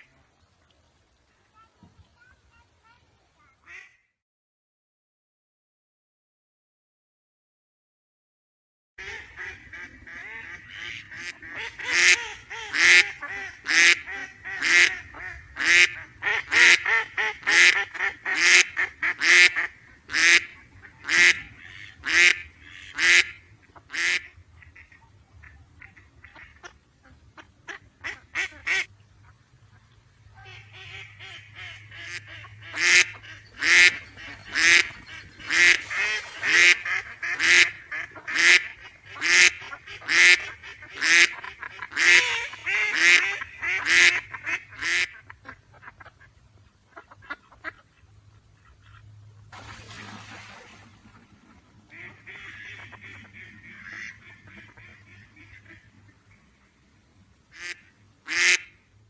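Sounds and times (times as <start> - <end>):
duck quacking: 3.6 - 4.1, 9.0 - 29.8, 30.4 - 49.1, 51.5 - 56.1, 57.5 - 58.8.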